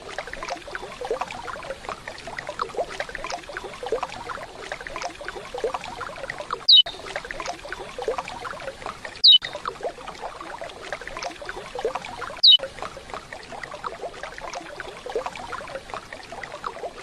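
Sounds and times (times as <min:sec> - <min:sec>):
water droplet plinks: 0:06.6 - 0:08.2, 0:09.2 - 0:09.9, 0:11.2 - 0:12.7.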